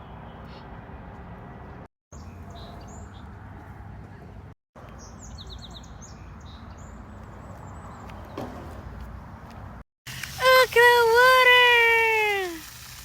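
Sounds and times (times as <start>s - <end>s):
wild birds chirping: 2.1s - 3.4s, 5.0s - 8.7s.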